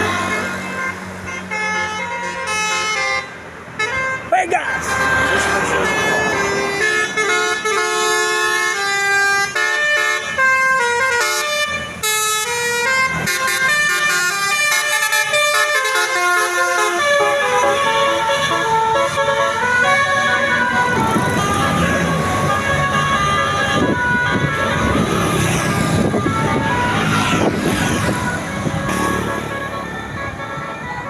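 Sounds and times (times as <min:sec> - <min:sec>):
bus horn playing a melody: 0:00.0 - 0:31.0.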